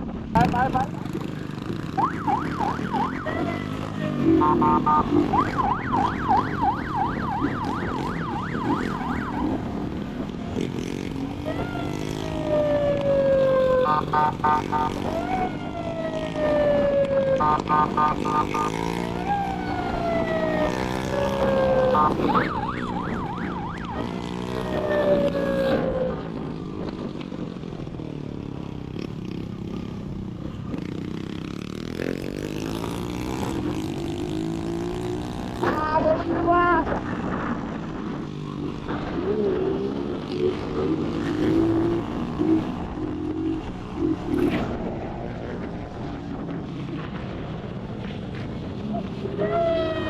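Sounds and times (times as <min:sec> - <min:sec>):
motorcycle engine revving: 0:00.4 - 0:28.0, 0:28.6 - 0:36.1, 0:37.0 - 0:47.2
electronic police siren: 0:01.9 - 0:10.2, 0:11.4 - 0:26.6, 0:49.4 - 0:50.0.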